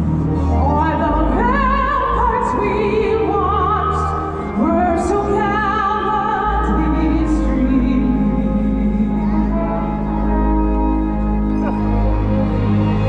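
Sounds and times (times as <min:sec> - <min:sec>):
operatic singing: 0:00.0 - 0:13.0
sustained accompaniment: 0:00.0 - 0:13.0.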